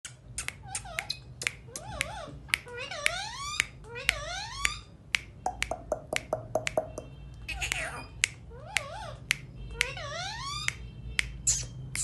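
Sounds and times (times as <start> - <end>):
parrot clicking: 0.0 - 12.0
parrot whistle-like calls: 9.8 - 10.8.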